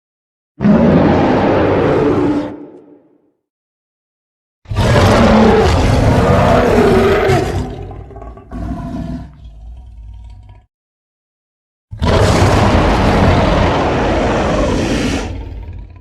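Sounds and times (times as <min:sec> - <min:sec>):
giant ape roaring: 0:00.6 - 0:03.2, 0:04.7 - 0:09.8, 0:11.9 - 0:16.0.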